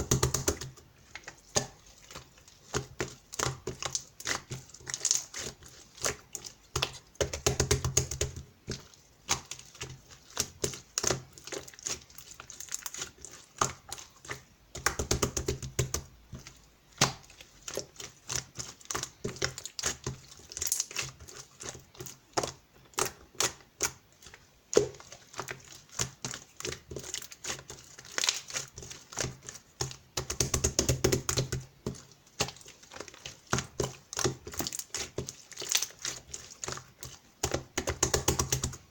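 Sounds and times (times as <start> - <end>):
slime squishing: 0.0 - 38.9
slime clicking and popping: 28.0 - 28.8.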